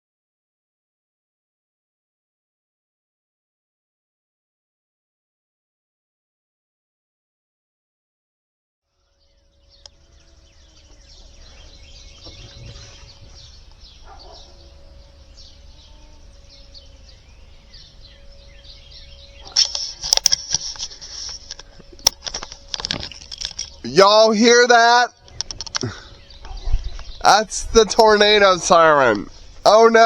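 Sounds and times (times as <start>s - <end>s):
faint warning siren tone: 8.9s - 24.1s
birds chirping: 8.9s - 30.0s
rustling and clicking: 19.4s - 24.0s, 25.2s - 27.2s.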